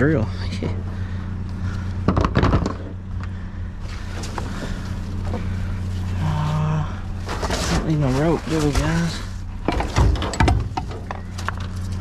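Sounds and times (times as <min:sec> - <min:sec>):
low engine drone: 0:00.0 - 0:12.0
junk clattering and knocking: 0:01.7 - 0:05.8, 0:07.2 - 0:12.0.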